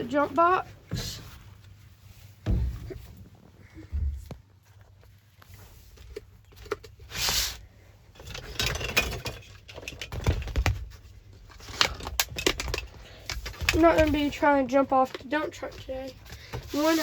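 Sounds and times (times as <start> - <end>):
rustling: 0.0 - 17.0
handling clicks and knocks: 5.9 - 7.0, 8.1 - 16.9.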